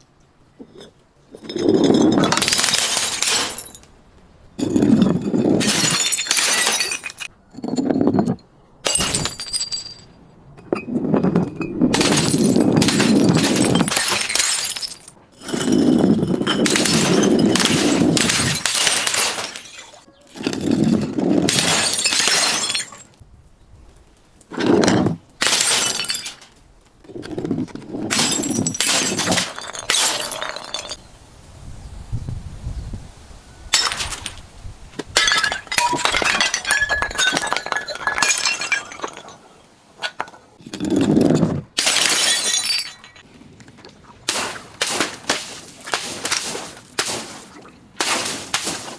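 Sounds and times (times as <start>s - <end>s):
glass crushing and shattering: 0.7s - 3.9s, 4.6s - 23.2s, 24.6s - 26.6s, 27.2s - 31.0s, 33.7s - 34.4s, 35.2s - 39.4s, 40.0s - 43.3s
glass shards tinkling: 11.6s - 20.9s, 35.2s - 39.4s, 41.9s - 43.2s.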